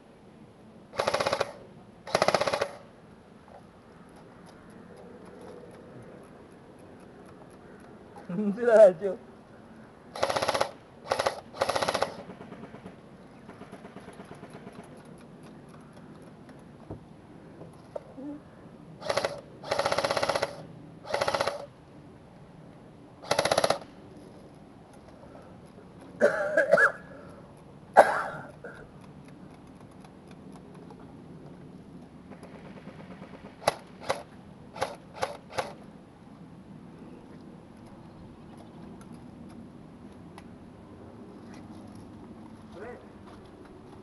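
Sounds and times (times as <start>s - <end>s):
airsoft rifle bursts: 10.2s - 12.3s, 19.0s - 21.7s, 23.2s - 23.9s
single airsoft shots: 19.0s - 21.7s.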